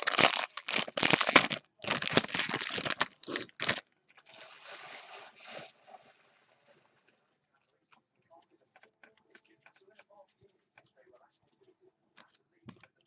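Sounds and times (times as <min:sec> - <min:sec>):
wrapper crinkling: 0:00.0 - 0:03.9
wrapper rustling: 0:00.0 - 0:03.9.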